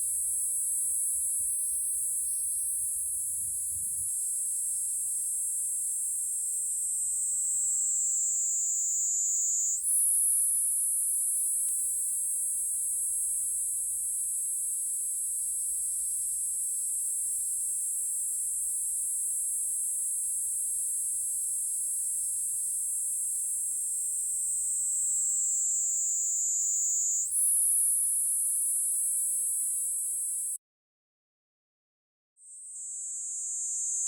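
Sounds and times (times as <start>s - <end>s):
cicada shrill buzzing: 6.6s - 11.9s, 24.0s - 30.6s.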